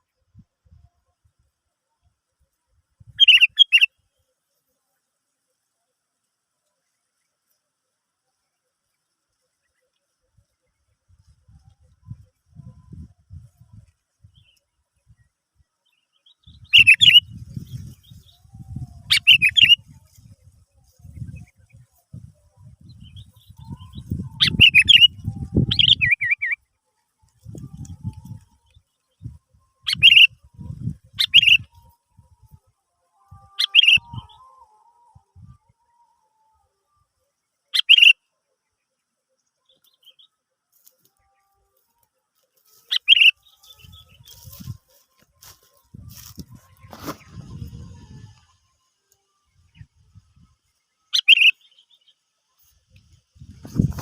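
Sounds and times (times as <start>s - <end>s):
bird calling: 3.2s - 3.9s, 16.7s - 17.2s, 19.1s - 19.8s, 29.8s - 30.3s, 33.6s - 34.6s, 37.7s - 38.2s, 42.9s - 44.6s, 51.1s - 52.0s
bird chirping: 3.2s - 3.9s, 15.9s - 19.9s, 22.8s - 26.7s, 28.6s - 30.4s, 31.1s - 31.8s, 33.6s - 34.6s, 37.5s - 38.2s, 42.9s - 44.8s, 46.8s - 52.3s.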